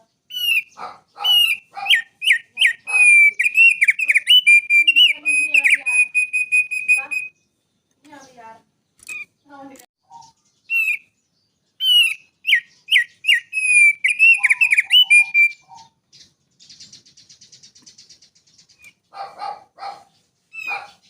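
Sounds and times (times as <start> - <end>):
buzzy bird trill: 0.0 - 19.3, 20.0 - 21.0
songbird whistling: 0.3 - 7.5, 10.1 - 11.2, 11.8 - 19.0.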